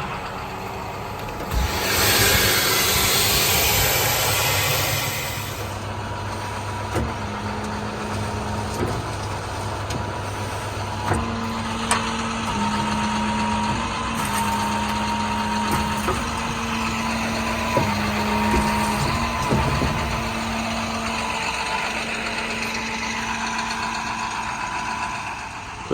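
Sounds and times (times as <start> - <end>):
mechanical whine shifting pitch: 0.0 - 6.4
diesel engine idling: 0.0 - 25.9.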